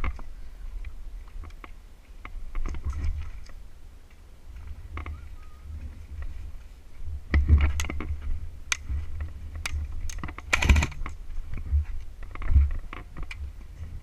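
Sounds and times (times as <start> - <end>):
sharp clicks and knocks: 9.5 - 11.6.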